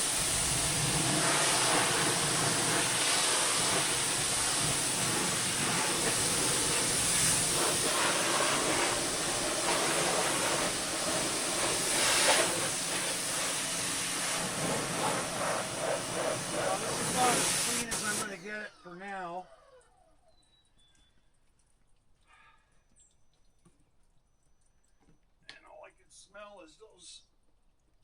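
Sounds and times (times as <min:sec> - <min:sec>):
pressure washer spraying water: 0:00.0 - 0:18.5.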